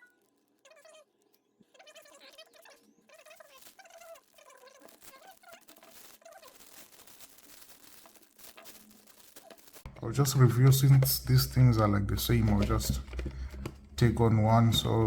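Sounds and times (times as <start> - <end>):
faint wavering pitched calls: 0.0 - 6.1
packaging rustling and crinkling: 0.0 - 15.0.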